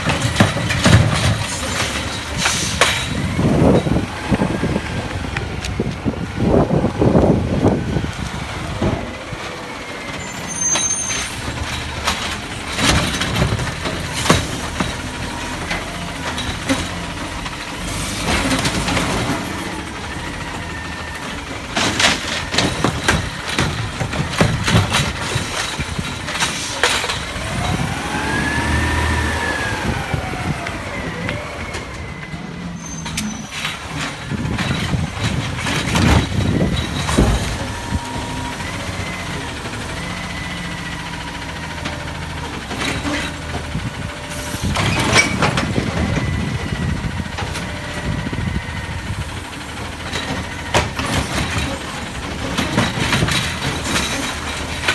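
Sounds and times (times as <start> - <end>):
metal clanks and bangs: 0.0 - 4.0, 49.7 - 54.9
garbage truck engine running: 0.0 - 54.9.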